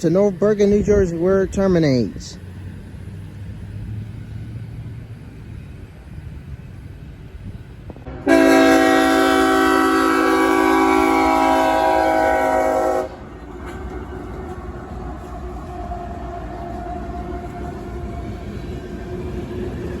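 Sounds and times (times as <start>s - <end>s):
train rolling by: 0.0s - 20.0s
locomotive air horn blast: 8.0s - 13.2s.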